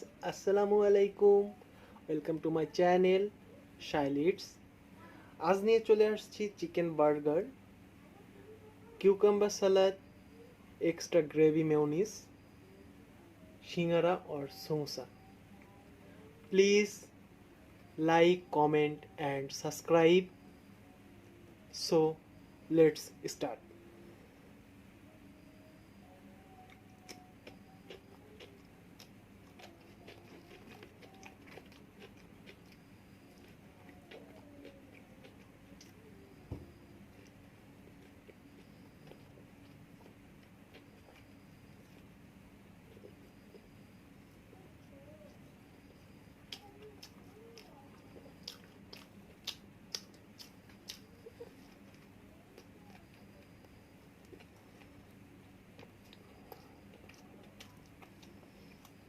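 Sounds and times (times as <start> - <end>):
low room hum: 0.0 - 59.0
person chewing food: 26.6 - 42.2, 42.8 - 59.0.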